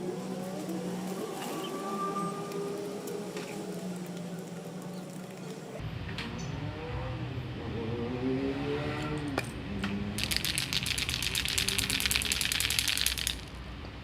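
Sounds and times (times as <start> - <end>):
spray can being shaken: 10.2 - 13.6.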